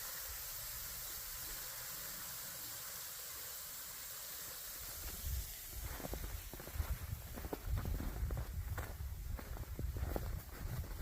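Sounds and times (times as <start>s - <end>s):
water falling over waterfall: 0.0s - 6.8s
footsteps in snow: 5.0s - 11.0s.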